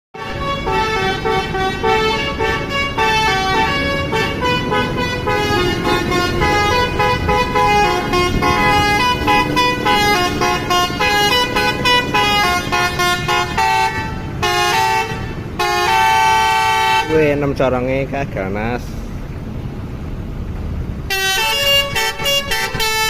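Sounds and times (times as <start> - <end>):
multi-tone bus horn melody: 0.2 - 17.4, 21.1 - 23.0
steady low rumble: 0.3 - 14.5.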